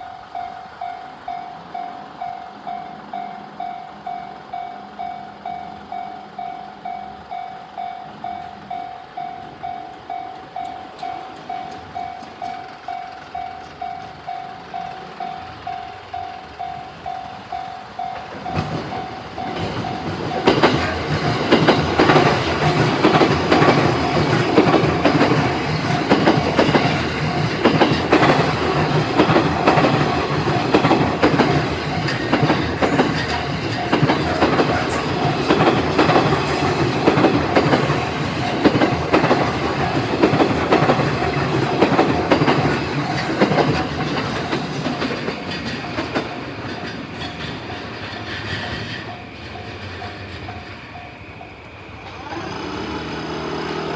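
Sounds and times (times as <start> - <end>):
level crossing warning bell: 0.0 - 51.7
train wheels clattering over rail joints: 9.4 - 51.0.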